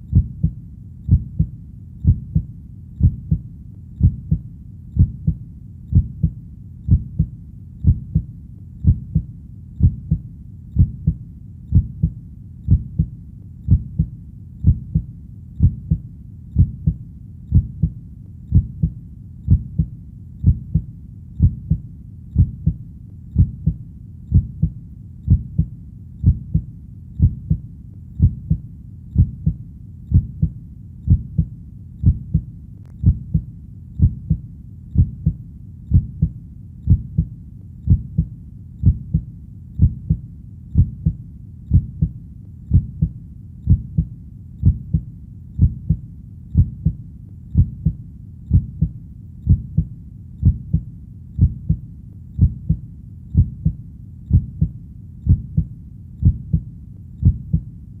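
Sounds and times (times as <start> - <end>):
heartbeat: 0.0 - 57.8.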